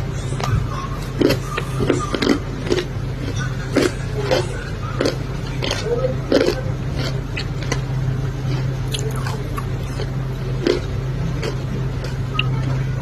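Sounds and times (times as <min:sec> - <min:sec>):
person chewing crunchy clay: 0:00.0 - 0:13.0
steady low hum: 0:00.0 - 0:13.0.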